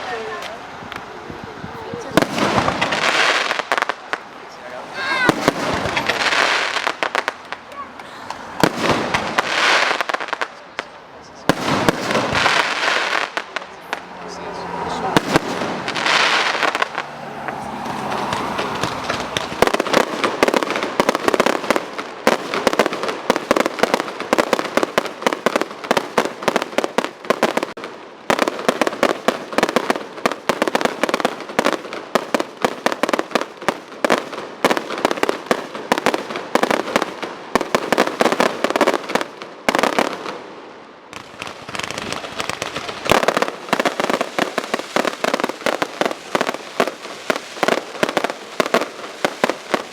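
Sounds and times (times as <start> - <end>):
fireworks bangs and crackling: 0.0 - 49.9.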